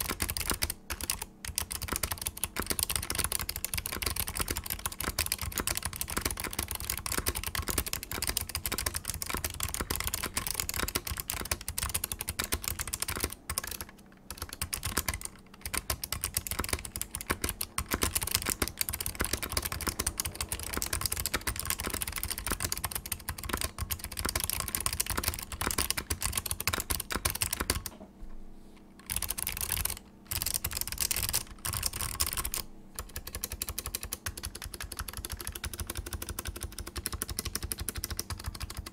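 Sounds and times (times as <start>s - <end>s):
rapid typing on mechanical keyboard: 0.0s - 27.9s, 29.0s - 38.9s.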